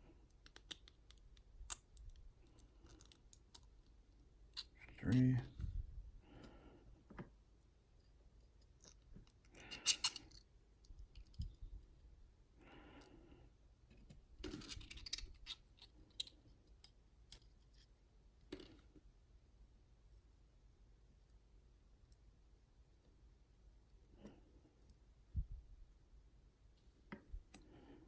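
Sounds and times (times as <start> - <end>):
small metallic clicks and scrapes: 0.3 - 3.9, 8.0 - 11.9, 13.9 - 17.9.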